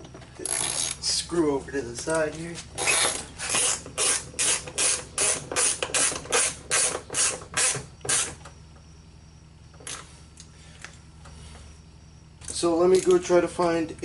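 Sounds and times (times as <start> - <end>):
hand ratchet clicking: 2.8 - 8.3.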